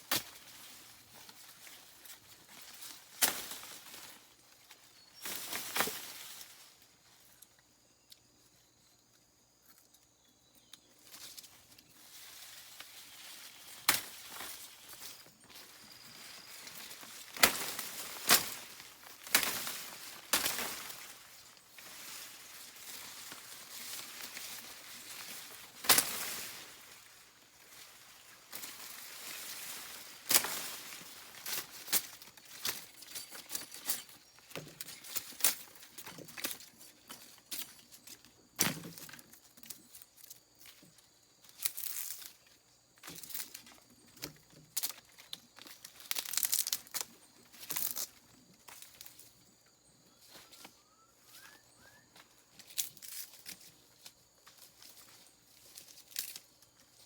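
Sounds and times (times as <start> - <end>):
rustling and crackling: 11.0 - 49.4, 52.2 - 57.0.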